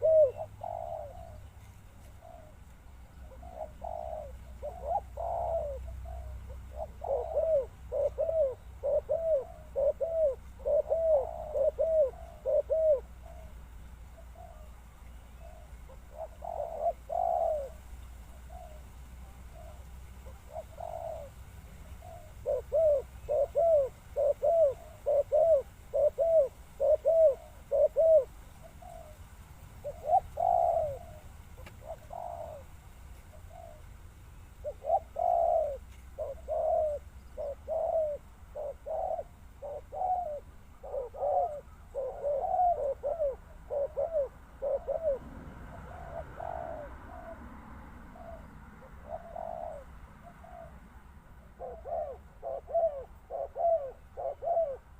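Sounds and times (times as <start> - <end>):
dove cooing: 0.0 - 54.9.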